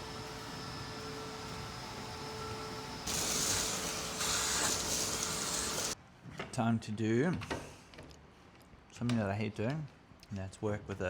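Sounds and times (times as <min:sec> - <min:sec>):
power tool whining: 0:00.0 - 0:06.0
loud hissing noise: 0:03.0 - 0:06.0.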